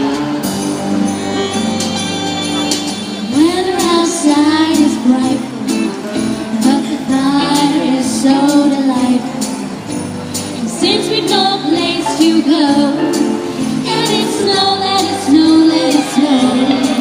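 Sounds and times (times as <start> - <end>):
instrumental accompaniment: 0.0 - 17.0
person singing: 3.3 - 9.5, 10.6 - 17.0.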